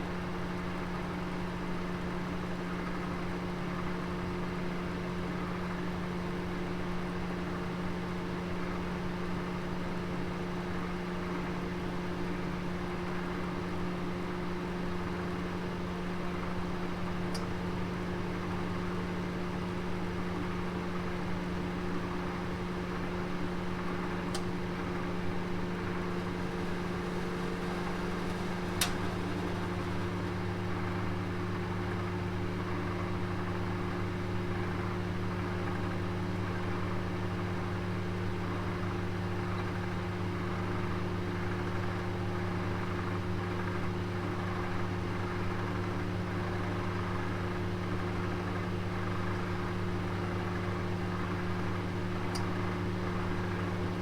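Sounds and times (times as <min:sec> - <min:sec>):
oven humming: 0:15.0 - 0:36.8
lower hum: 0:24.3 - 0:31.2.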